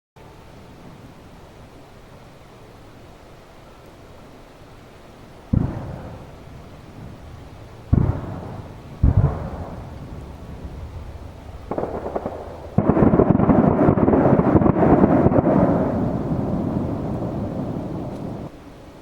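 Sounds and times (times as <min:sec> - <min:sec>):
firework booms with rumble: 0:05.5 - 0:18.5
rapid firework bursts: 0:05.5 - 0:18.5.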